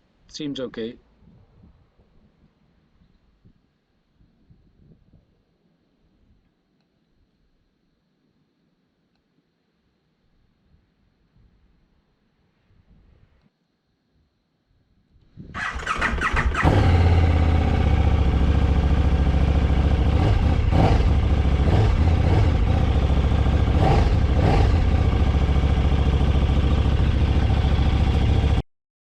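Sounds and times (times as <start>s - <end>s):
motorcycle starter cranking: 15.6s - 17.3s
motorcycle engine idling: 15.6s - 28.6s.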